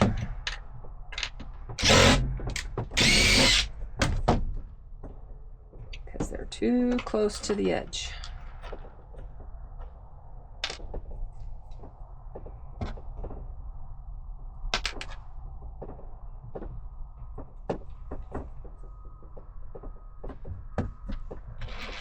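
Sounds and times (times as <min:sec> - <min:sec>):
small objects knocking and clicking: 0:14.8 - 0:16.0.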